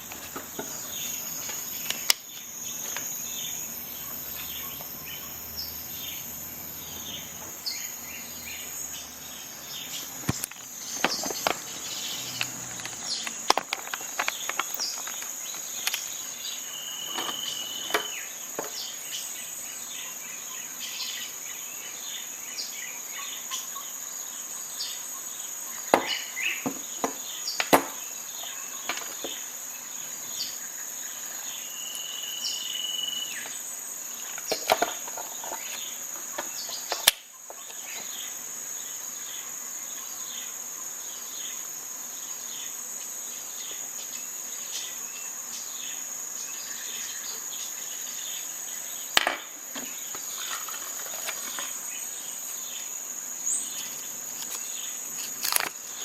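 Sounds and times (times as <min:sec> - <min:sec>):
insects chirring: 0:00.0 - 0:56.0
sharp clicks and knocks: 0:10.2 - 0:16.2.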